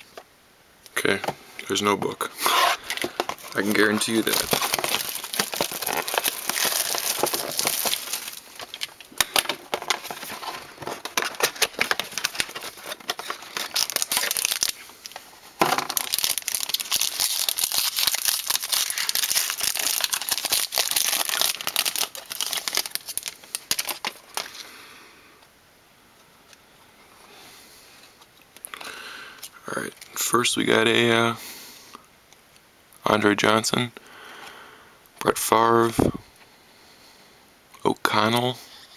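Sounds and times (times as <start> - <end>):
wrapper crinkling and tearing: 2.4 - 24.7.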